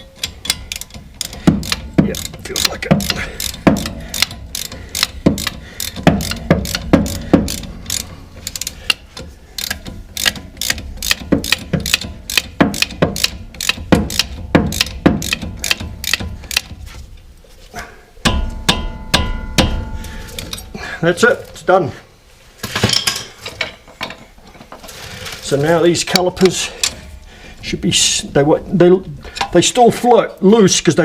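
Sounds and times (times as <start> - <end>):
ratchet wrench clicking: 0.0 - 16.8.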